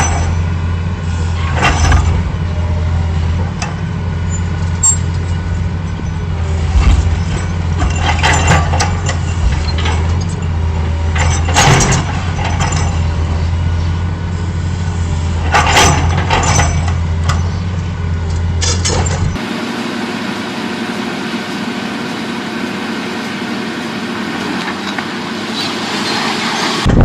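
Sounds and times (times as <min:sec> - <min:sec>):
diesel machinery droning: 0:00.0 - 0:27.0
metallic clanks and bangs: 0:03.2 - 0:13.6, 0:15.3 - 0:17.7.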